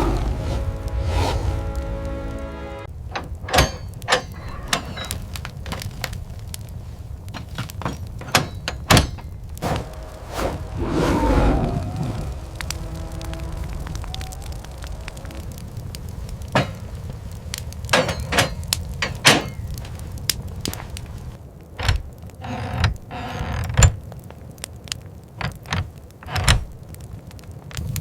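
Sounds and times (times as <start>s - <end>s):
steady low rumble: 0.0s - 17.9s.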